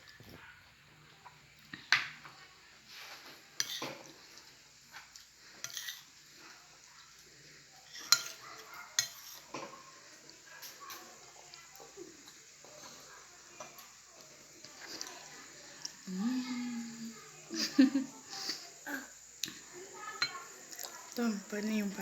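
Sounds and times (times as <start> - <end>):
spoon clinking against a bowl: 7.9 - 8.4, 9.0 - 9.5.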